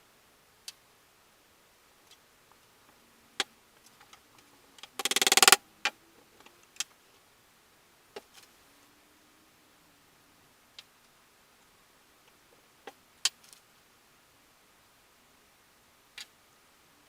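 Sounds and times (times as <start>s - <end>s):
sharp clicks and knocks: 4.8s - 5.6s
rapid clicks: 4.9s - 5.6s.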